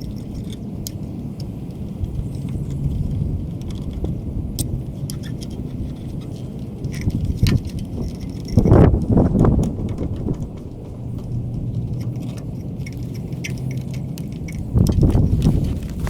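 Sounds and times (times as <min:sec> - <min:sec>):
small clicks of tools: 0:00.0 - 0:16.0
steady low rumble: 0:00.0 - 0:16.0
metallic jingling: 0:05.0 - 0:16.0
scuffing clatter: 0:14.7 - 0:16.0.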